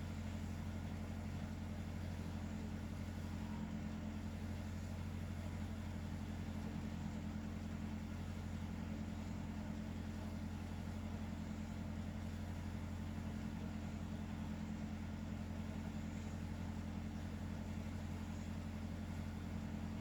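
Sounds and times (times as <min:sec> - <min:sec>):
steady low hum: 0:11.5 - 0:20.0.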